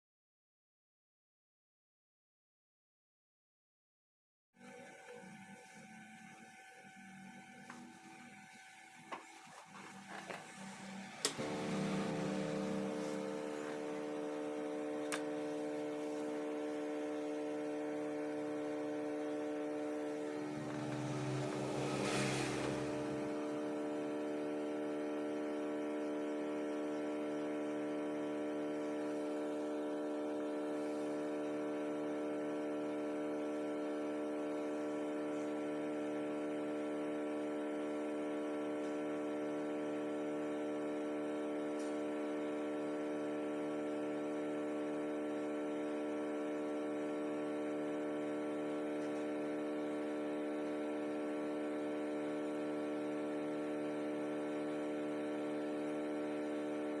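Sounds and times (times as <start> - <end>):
electrical mains hum: 4.6 - 57.0
short burst of noise: 20.1 - 24.2.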